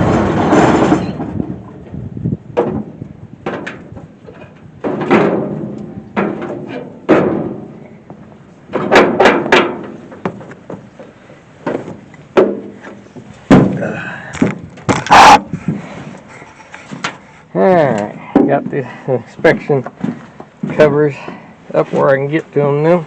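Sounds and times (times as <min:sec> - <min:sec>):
sheet metal clanks and thunks: 0:00.0 - 0:01.8, 0:02.5 - 0:08.0, 0:08.7 - 0:10.9, 0:11.6 - 0:15.8
loud ringing metal clang: 0:00.7 - 0:01.3.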